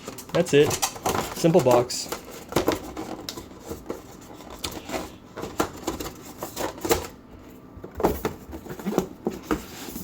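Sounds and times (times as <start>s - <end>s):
paper packaging rustling: 0.0s - 7.2s.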